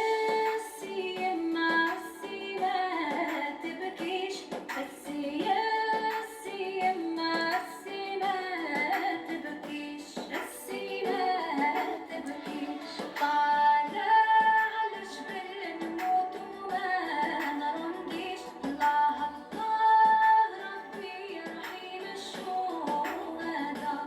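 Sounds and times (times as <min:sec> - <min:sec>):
light percussion: 0:00.0 - 0:24.0
woman singing: 0:00.0 - 0:24.0.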